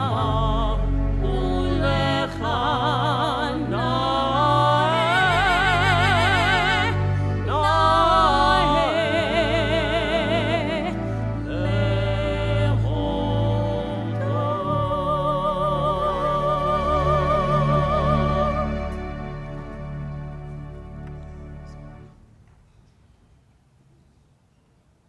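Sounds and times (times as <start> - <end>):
person singing operatically: 0.0 - 19.5
sustained low accompaniment: 0.0 - 22.5.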